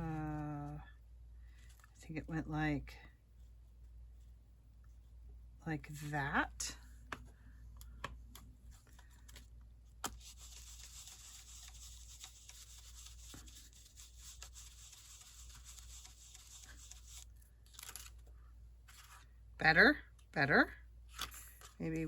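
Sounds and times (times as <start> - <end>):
rubbing on paper: 10.1 - 17.3.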